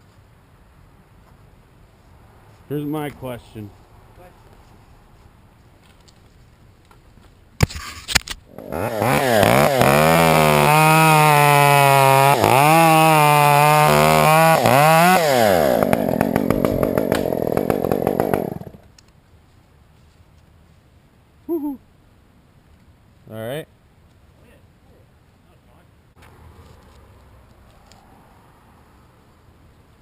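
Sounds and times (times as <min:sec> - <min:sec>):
chainsaw engine revving: 0:08.5 - 0:18.8.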